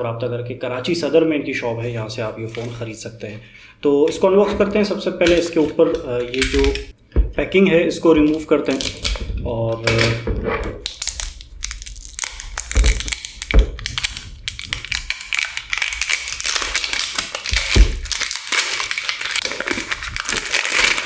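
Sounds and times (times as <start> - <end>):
plastic wrapping tearing and crinkling: 2.4 - 2.9, 4.6 - 7.0, 8.2 - 21.0.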